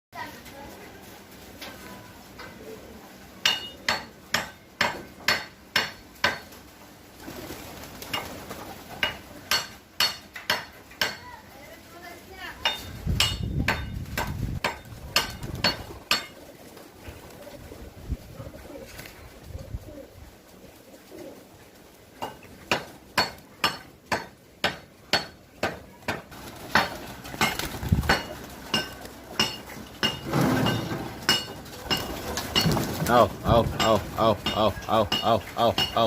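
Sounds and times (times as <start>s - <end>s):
pigeons cooing: 15.0s - 23.1s.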